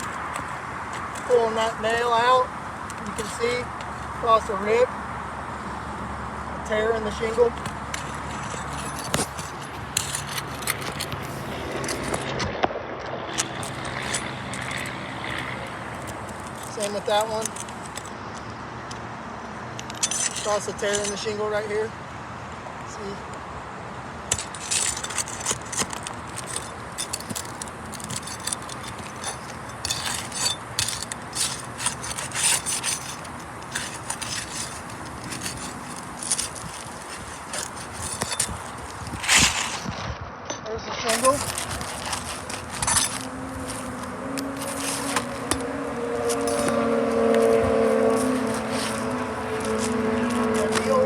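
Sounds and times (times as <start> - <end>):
scraping on roof shingles: 0.0 - 1.8, 7.3 - 18.3, 24.2 - 40.0, 41.1 - 51.0.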